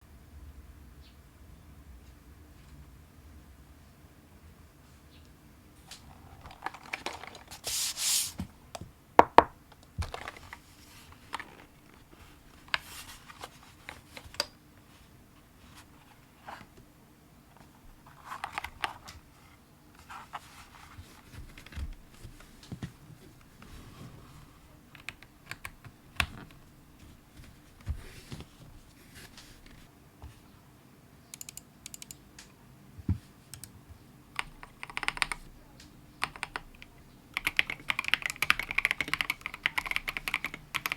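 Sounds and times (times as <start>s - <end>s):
mechanical keyboard keystrokes: 24.9s - 26.6s, 31.3s - 32.2s, 34.4s - 35.4s, 36.2s - 40.9s.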